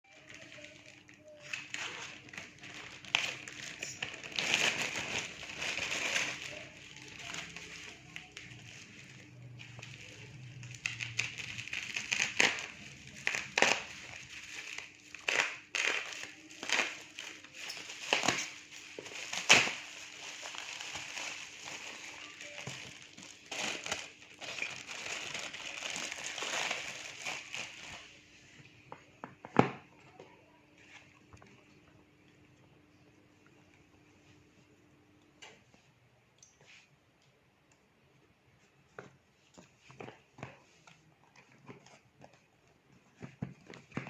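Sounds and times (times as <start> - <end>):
packaging crinkling: 0.1 - 28.2
faint steady hum: 0.1 - 44.0.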